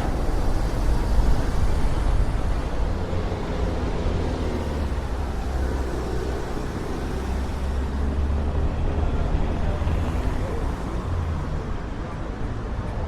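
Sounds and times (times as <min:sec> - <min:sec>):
wind rumbling on microphone: 0:00.0 - 0:07.7.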